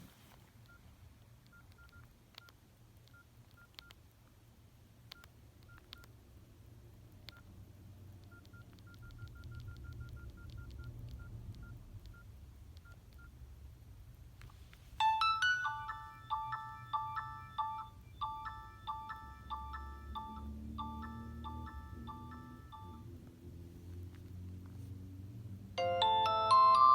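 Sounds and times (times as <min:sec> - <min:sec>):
phone keypad beeps: 0:01.5 - 0:02.5, 0:08.3 - 0:13.3, 0:15.0 - 0:23.1
phone ringtone melody: 0:15.0 - 0:23.1, 0:25.8 - 0:26.9.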